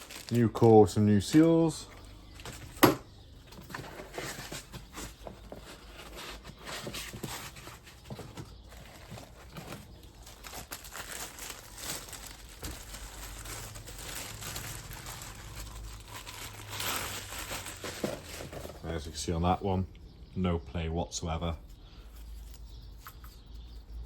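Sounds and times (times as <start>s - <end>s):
packaging crinkling: 0.0s - 18.9s.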